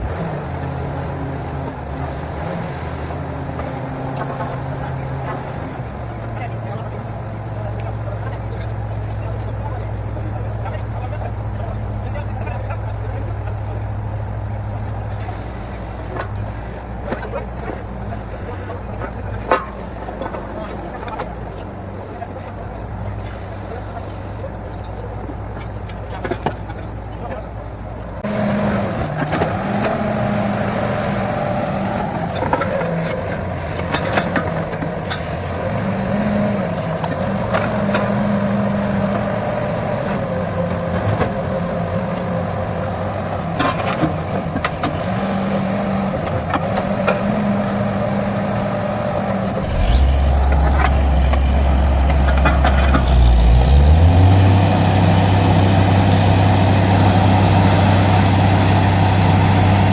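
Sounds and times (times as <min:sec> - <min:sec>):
drilling rig engine under load: 0:28.2 - 0:59.9
deep heavy hum: 0:49.4 - 0:59.9
rising high whine: 0:49.6 - 0:59.9.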